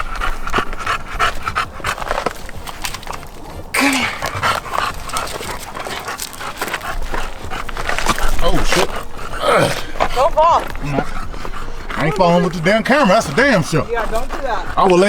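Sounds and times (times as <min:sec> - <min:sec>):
dog panting: 0:00.0 - 0:15.0
scuff: 0:01.6 - 0:09.1.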